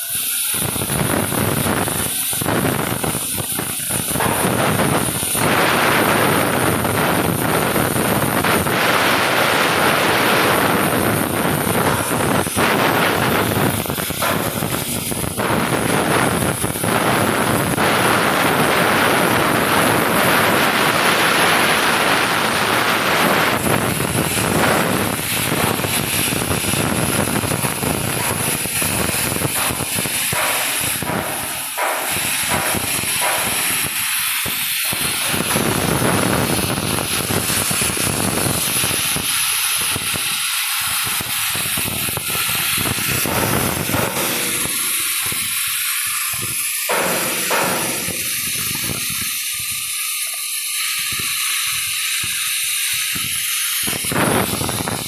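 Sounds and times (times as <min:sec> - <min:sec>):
machine running with hiss-like noise: 0:00.0 - 0:55.0.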